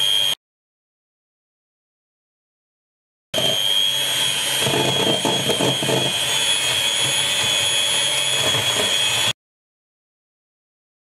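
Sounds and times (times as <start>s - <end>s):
electric hand whisk running: 0.0s - 0.4s, 3.4s - 9.4s.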